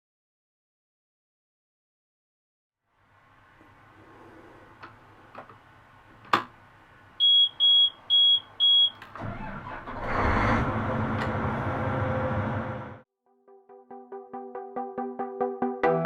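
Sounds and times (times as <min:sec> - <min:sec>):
diesel engine starting and running: 0:03.0 - 0:13.1
high electronic warning beeps: 0:07.2 - 0:09.0.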